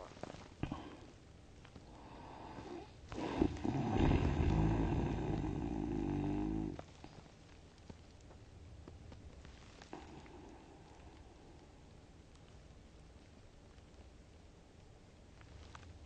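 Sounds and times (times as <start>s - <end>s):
soft breathing: 0.2s - 1.2s, 1.8s - 7.4s, 9.5s - 12.0s
person snoring: 2.0s - 6.8s.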